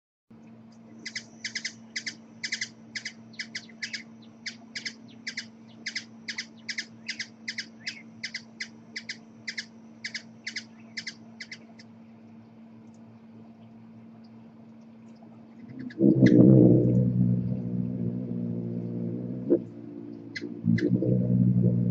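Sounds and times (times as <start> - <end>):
steady low hum: 0.3 - 21.9
hummingbird chip calls: 0.9 - 11.9, 15.6 - 16.5, 18.3 - 21.0.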